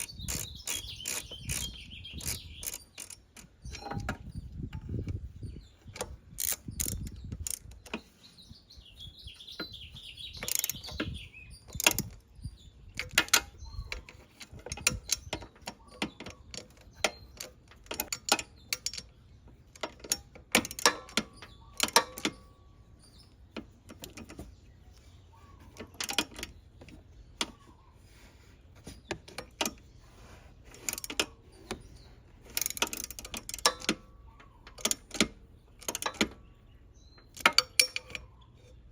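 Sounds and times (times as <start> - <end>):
rapid ratchet clicking: 0.0 - 5.2, 5.8 - 8.2
metallic clicks and knocks: 0.0 - 8.3, 9.4 - 27.9, 28.7 - 38.9.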